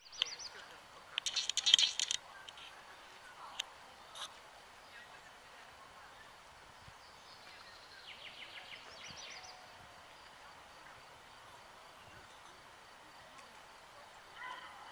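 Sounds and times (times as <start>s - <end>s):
bird trill: 1.2s - 2.2s.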